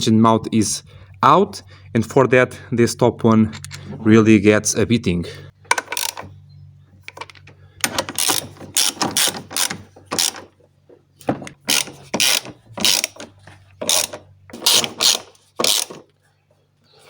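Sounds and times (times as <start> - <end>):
ratchet wrench clicking: 7.8 - 10.4, 11.7 - 16.0.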